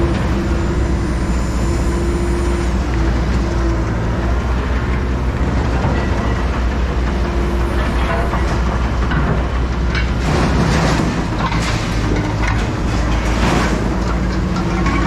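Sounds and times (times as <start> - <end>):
engine running: 0.0 - 15.0.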